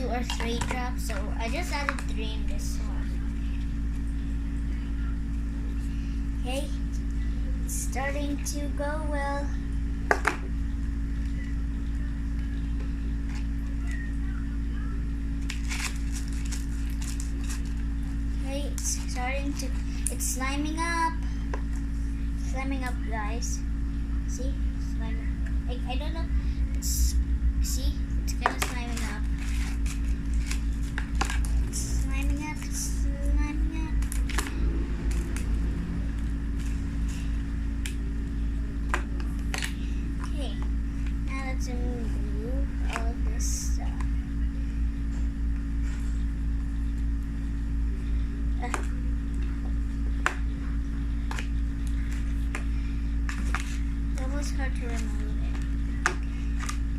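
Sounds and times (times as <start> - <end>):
steady low hum: 0.0 - 56.9
sticky slime squelching: 28.2 - 44.2, 48.6 - 56.9.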